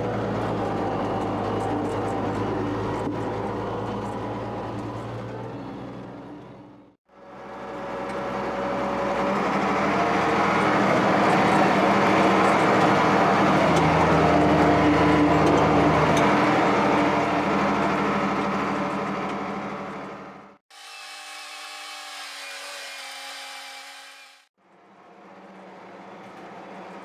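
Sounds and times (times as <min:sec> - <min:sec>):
steady engine hum: 0:00.0 - 0:20.6.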